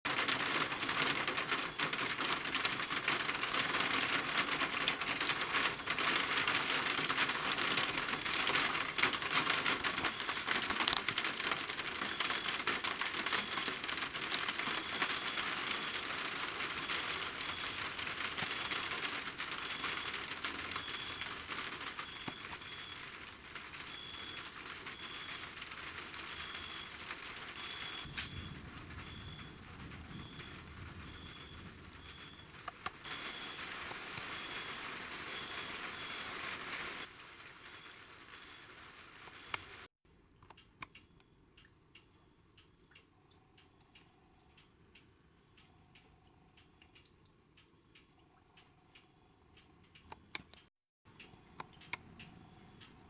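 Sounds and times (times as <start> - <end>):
rain pattering: 0.1 - 39.9.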